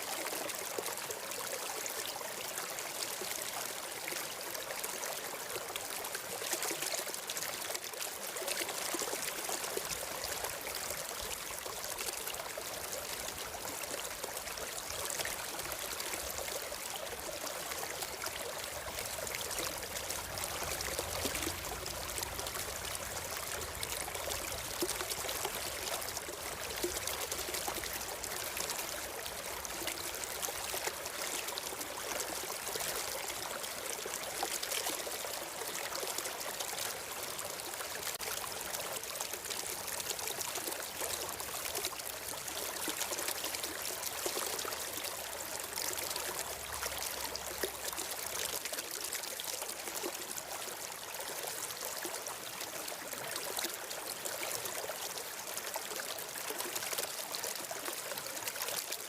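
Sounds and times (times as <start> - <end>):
stream water flowing: 0.0 - 59.0.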